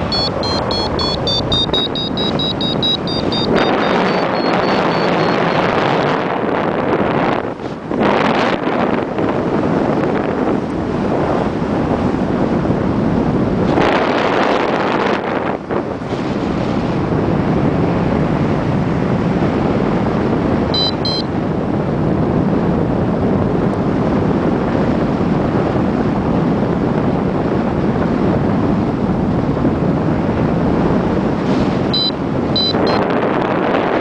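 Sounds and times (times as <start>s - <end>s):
short high electronic beeps: 0.0s - 5.6s, 20.8s - 21.3s, 31.9s - 33.0s
wind buffeting microphone: 0.0s - 34.0s.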